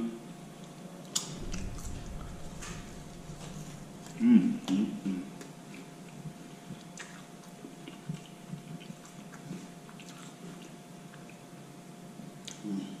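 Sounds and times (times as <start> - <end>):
person chewing food: 5.4 - 11.4.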